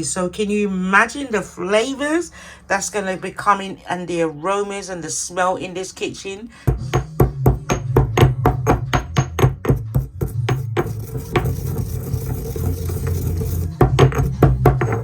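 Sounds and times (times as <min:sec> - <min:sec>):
background music with steady beat: 0:06.6 - 0:15.0.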